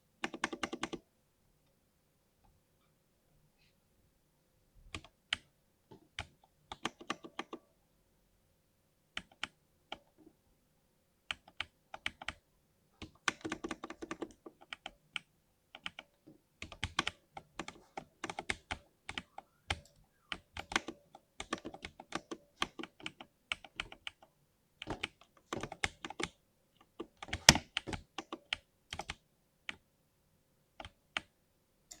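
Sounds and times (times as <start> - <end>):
mechanical keyboard typing: 0.2 - 1.0, 6.1 - 7.6, 11.3 - 12.4, 13.0 - 16.0, 16.6 - 24.2, 24.8 - 29.8.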